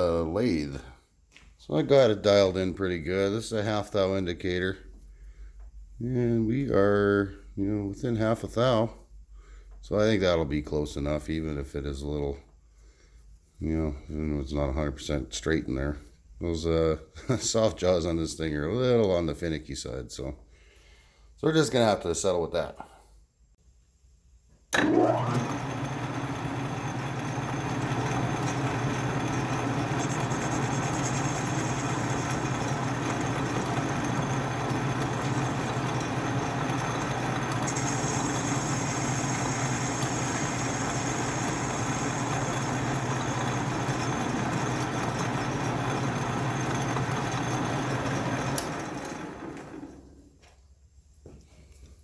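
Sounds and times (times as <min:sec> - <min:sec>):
lathe motor humming: 0:24.8 - 0:50.0.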